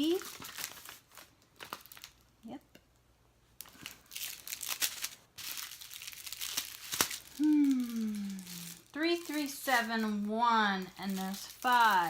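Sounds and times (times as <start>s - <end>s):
plastic bags crinkling: 0.0s - 2.3s, 3.6s - 12.0s
person humming hmm: 7.4s - 8.8s.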